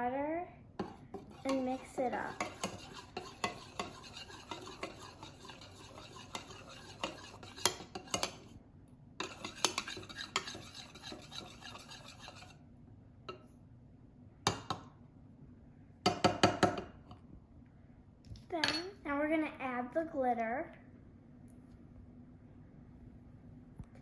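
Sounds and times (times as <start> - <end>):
utensil stirring paint in container: 0.8 - 8.5, 9.2 - 12.6.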